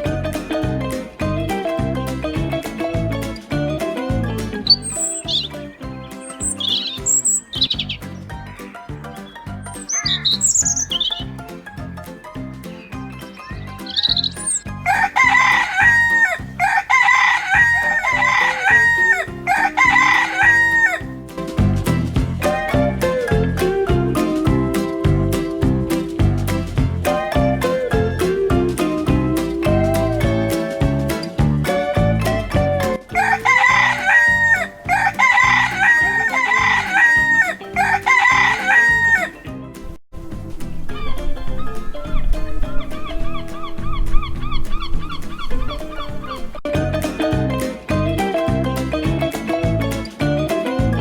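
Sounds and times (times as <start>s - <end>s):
upbeat background music: 0.0s - 51.0s
rooster crowing: 14.9s - 21.1s, 33.1s - 39.4s.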